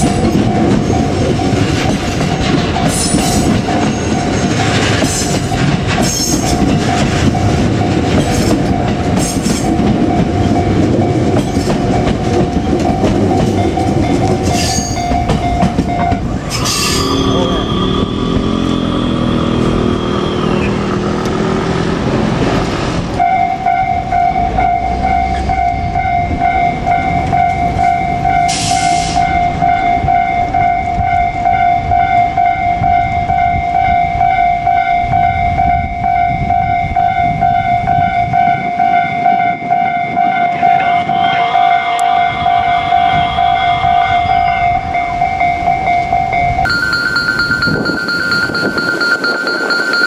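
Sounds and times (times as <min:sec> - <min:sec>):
train rumble and wheel clatter: 0:00.0 - 0:50.0
level-crossing electronic bell: 0:12.5 - 0:20.8, 0:23.2 - 0:50.0.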